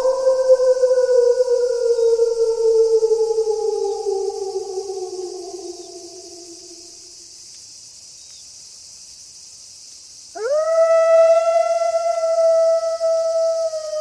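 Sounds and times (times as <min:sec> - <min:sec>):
wolf howling: 0:00.0 - 0:07.0, 0:10.4 - 0:14.0
steady high hiss: 0:00.0 - 0:14.0.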